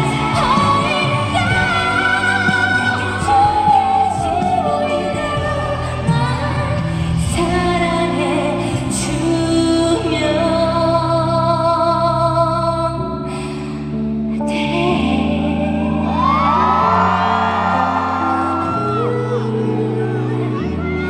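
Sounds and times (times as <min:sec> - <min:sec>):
band accompaniment: 0:00.0 - 0:07.7.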